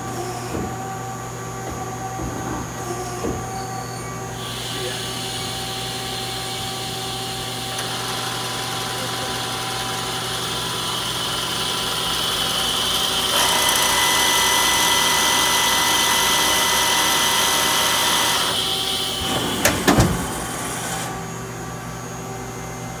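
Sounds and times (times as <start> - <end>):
machine whine with high tones: 4.1 - 21.4
sharp mechanical clunks: 18.2 - 21.3.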